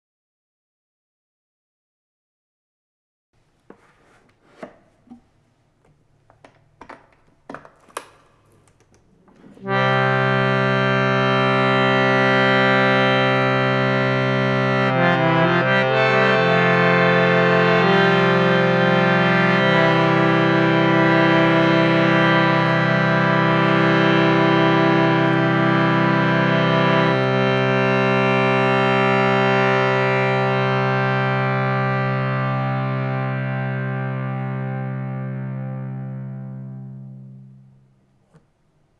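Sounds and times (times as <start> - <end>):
harmonium held chord: 9.5 - 37.7.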